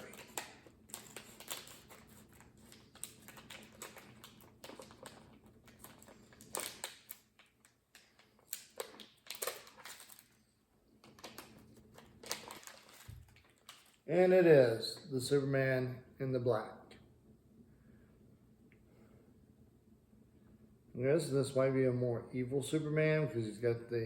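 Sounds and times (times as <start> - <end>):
plastic bag crinkling: 0.0 - 14.1.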